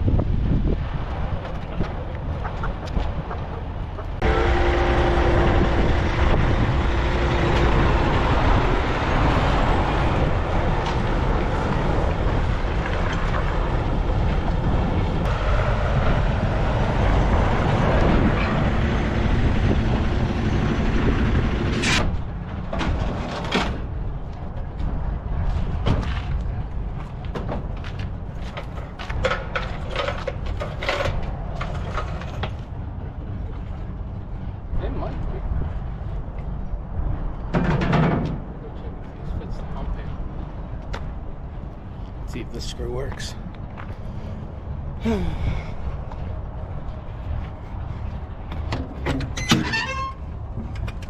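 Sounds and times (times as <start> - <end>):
diesel truck pulling away: 4.2 - 21.8.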